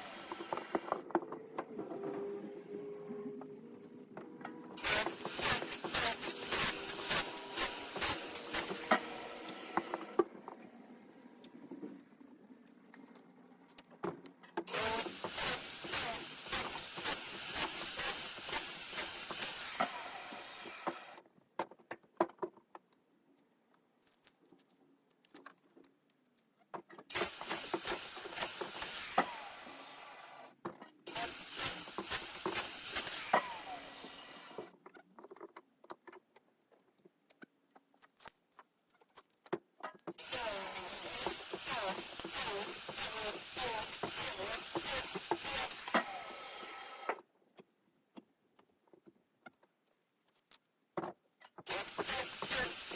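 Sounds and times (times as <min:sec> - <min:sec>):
circular saw cutting wood: 0:00.0 - 0:01.0, 0:04.7 - 0:10.2, 0:14.7 - 0:21.2, 0:27.1 - 0:30.5, 0:31.1 - 0:34.7, 0:40.2 - 0:47.2, 0:51.7 - 0:52.9.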